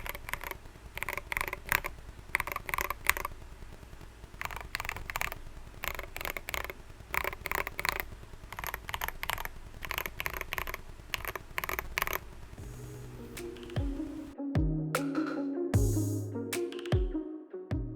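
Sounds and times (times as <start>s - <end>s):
music: 12.6s - 17.9s.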